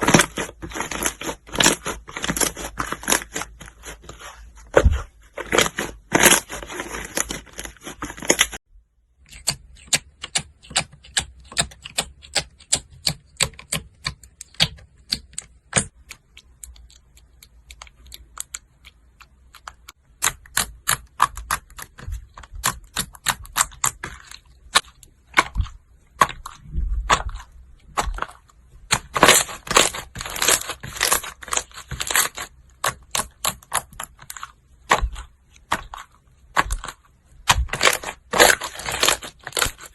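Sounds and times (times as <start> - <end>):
slime crackling and popping: 28.9 - 39.9.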